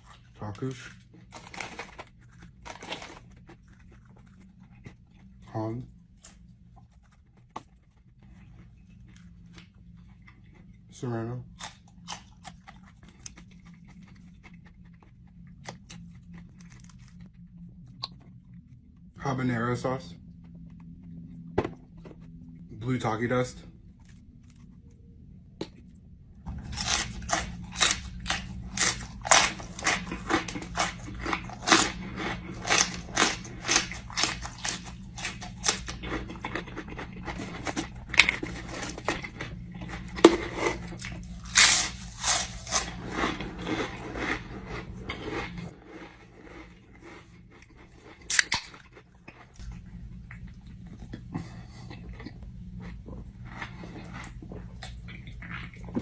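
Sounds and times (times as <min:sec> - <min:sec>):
person chewing crunchy snack: 0:00.0 - 0:19.1, 0:26.5 - 0:56.0.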